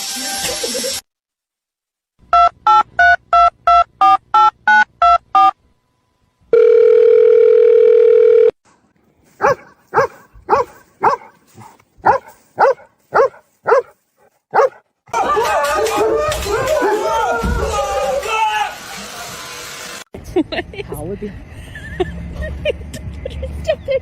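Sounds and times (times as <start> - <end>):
keypad dialing beeps: 2.3 - 5.5
steady phone tone: 2.3 - 5.6, 6.5 - 8.6
dog barking: 9.4 - 13.9, 14.5 - 14.8.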